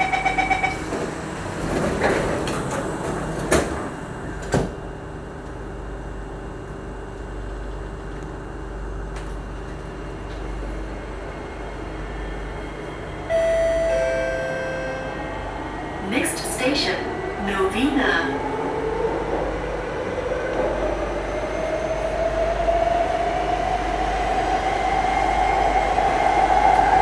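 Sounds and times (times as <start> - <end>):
train doors sliding shut: 0.0 - 4.9
train running noise: 0.0 - 5.6, 8.6 - 27.0
electronic chime tone: 13.3 - 15.2.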